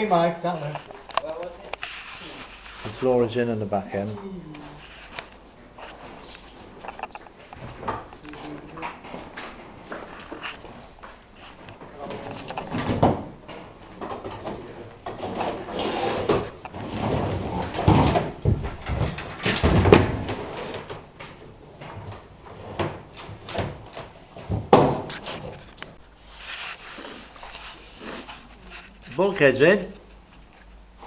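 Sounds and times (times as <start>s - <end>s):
objects knocking and scraping: 4.8s - 29.3s.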